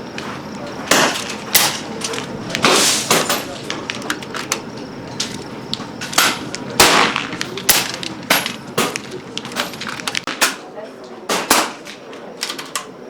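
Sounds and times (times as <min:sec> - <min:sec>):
air rifle shots: 0:00.8 - 0:03.9, 0:06.0 - 0:10.7, 0:11.3 - 0:11.9.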